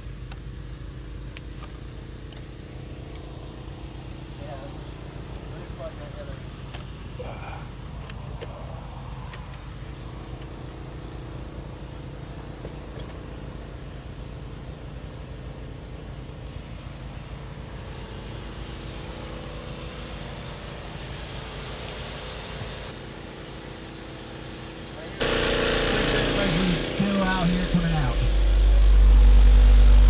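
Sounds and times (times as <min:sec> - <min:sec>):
faint outdoor background noise: 0:00.0 - 0:25.3
car engine idling: 0:00.0 - 0:30.0.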